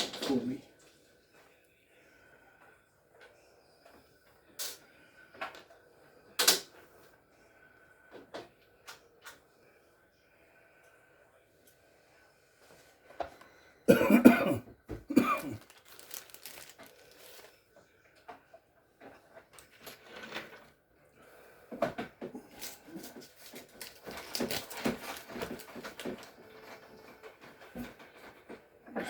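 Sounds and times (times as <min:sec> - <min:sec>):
person coughing: 0:13.9 - 0:15.6.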